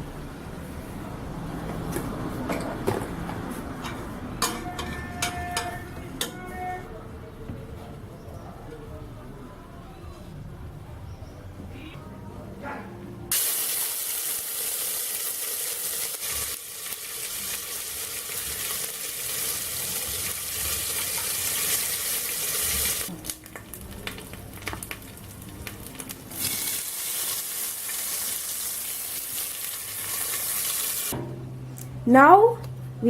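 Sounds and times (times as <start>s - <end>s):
seasoning sizzling in hot oil: 13.3s - 23.1s, 26.3s - 31.1s.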